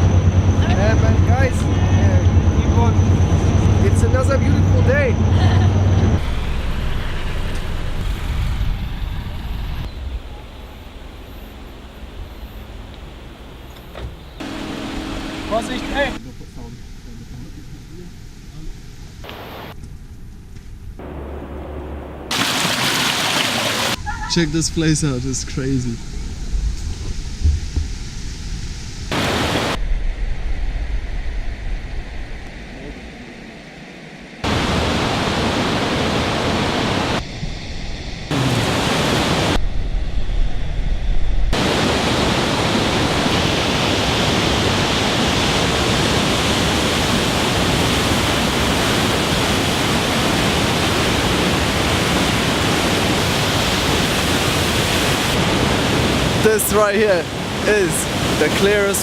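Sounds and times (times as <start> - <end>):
rushing water: 14.4 - 16.2, 22.3 - 24.7, 29.1 - 29.8, 34.4 - 37.2, 41.6 - 59.0.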